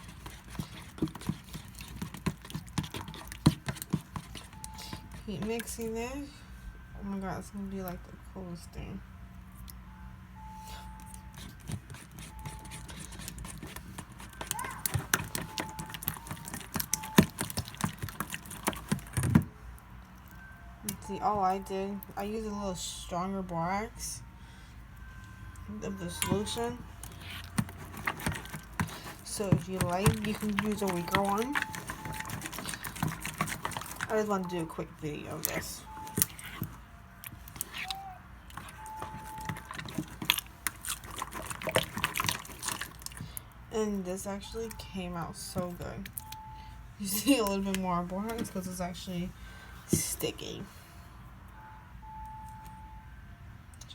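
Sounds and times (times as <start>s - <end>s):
slime being stirred: 0.0s - 6.0s, 10.6s - 22.9s, 25.2s - 46.4s.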